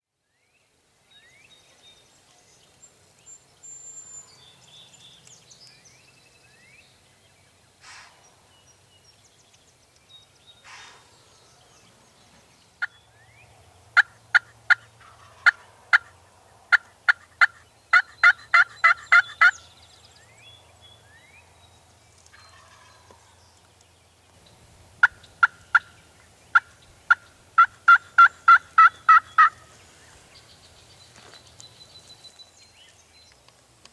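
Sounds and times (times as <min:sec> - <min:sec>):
turkey yelps: 0:14.0 - 0:16.1, 0:16.7 - 0:19.5, 0:26.5 - 0:29.7
faint songbird chirps: 0:16.2 - 0:33.5.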